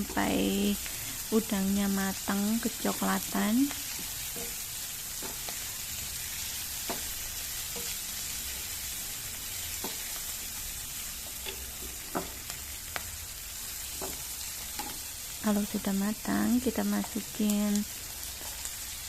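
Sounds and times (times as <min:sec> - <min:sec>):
paste sizzling in hot oil: 0:00.0 - 0:19.0.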